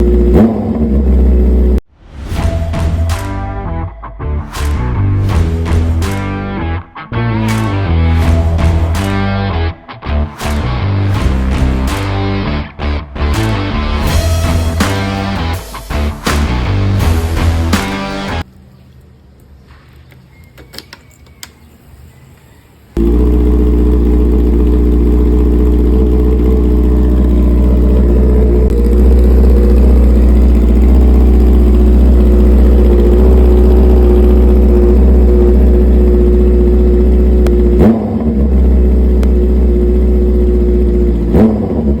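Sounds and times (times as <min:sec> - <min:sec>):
engine throttle blips: 0:02.4 - 0:18.4, 0:23.0 - 0:42.0
motorcycle engine idling: 0:23.0 - 0:37.8, 0:38.4 - 0:41.3.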